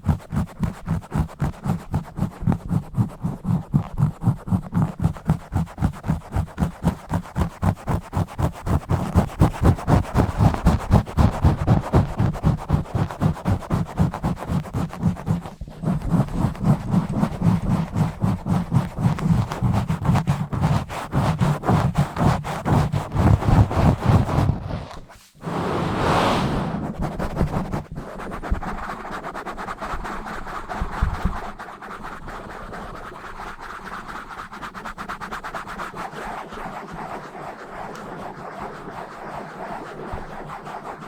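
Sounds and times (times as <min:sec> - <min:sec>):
scratching on microphone: 0:00.0 - 0:41.0.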